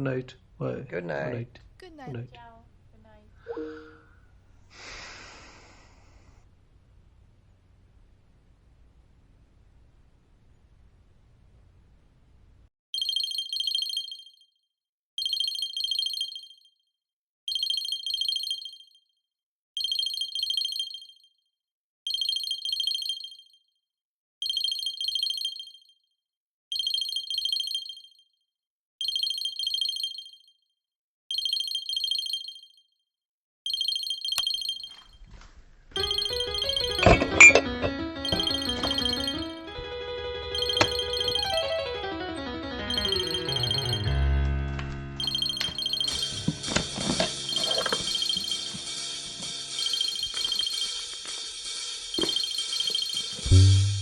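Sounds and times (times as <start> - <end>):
high electronic ringing tone: 3.5 - 4.0, 36.0 - 44.3, 45.2 - 50.9
music: 36.0 - 54.0.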